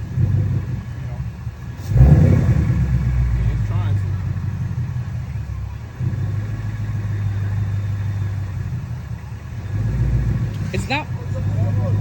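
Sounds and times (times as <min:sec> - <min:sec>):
car engine at low revs: 0:00.0 - 0:12.0.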